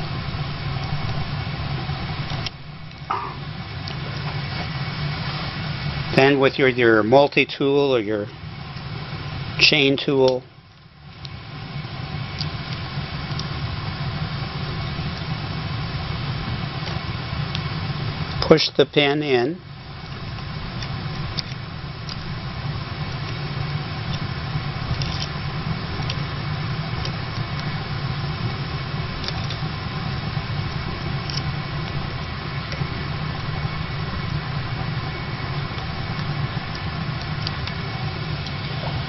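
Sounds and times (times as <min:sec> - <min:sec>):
steady low hum: 0:00.0 - 0:39.0
chain tool clicks: 0:24.9 - 0:25.3.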